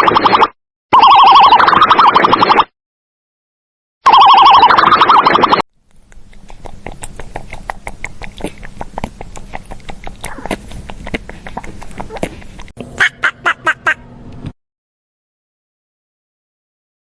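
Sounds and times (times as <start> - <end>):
fowl clicking: 12.9 - 14.0.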